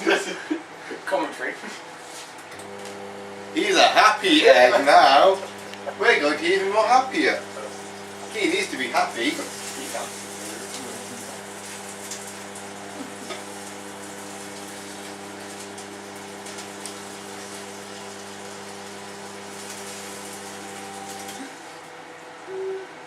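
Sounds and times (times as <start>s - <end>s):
microwave oven humming: 0.0s - 23.0s
short beep: 22.5s - 22.9s.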